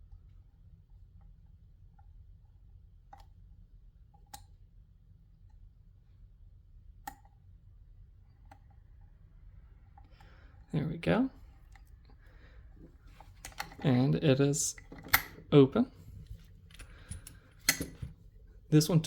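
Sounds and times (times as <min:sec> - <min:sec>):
lock pick clicking in lock: 0:13.4 - 0:13.9, 0:14.8 - 0:15.5, 0:16.7 - 0:18.2
sharp lock clicks: 0:14.8 - 0:15.5, 0:16.7 - 0:18.1.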